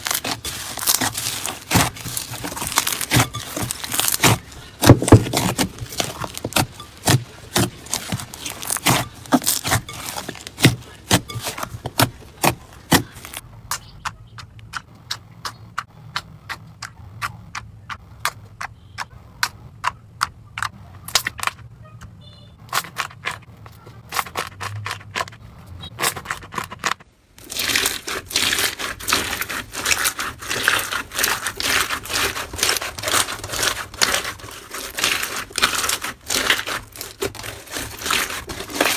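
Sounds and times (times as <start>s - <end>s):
slime crackling and popping: 0.0s - 13.4s, 27.4s - 38.9s
dense crunchy crackling: 0.0s - 13.5s, 22.7s - 38.9s.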